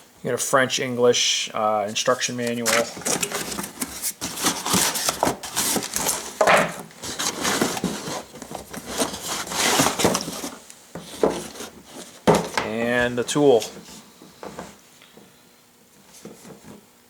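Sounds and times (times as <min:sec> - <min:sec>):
packaging rustling and scraping: 0:01.9 - 0:14.8.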